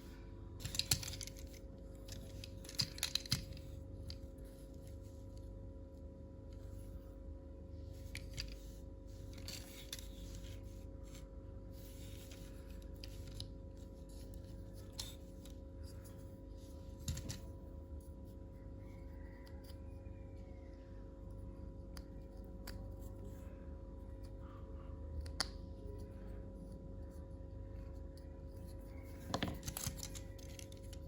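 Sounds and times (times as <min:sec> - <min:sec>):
steady low hum: 0:00.0 - 0:31.0
plastic toy packaging rustling: 0:00.6 - 0:03.6.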